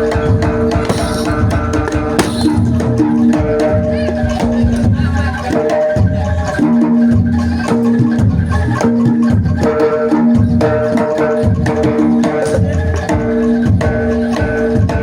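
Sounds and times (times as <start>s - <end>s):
drums beating steady rhythm: 0.0s - 15.0s
tuned percussion repeating notes: 0.0s - 15.0s.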